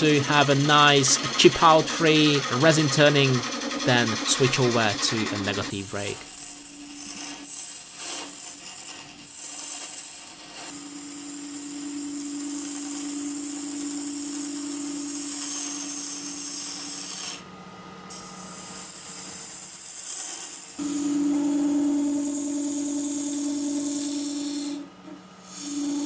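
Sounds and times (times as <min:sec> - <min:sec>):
scraper cutting with scraping hiss: 0:00.0 - 0:17.4, 0:18.1 - 0:21.2
wood lathe humming: 0:00.0 - 0:26.0.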